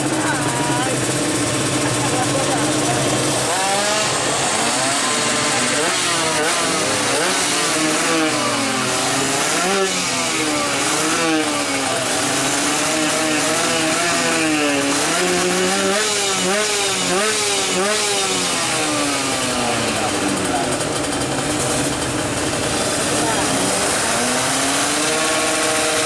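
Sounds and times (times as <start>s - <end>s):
two-stroke engine revving: 0.0s - 26.0s.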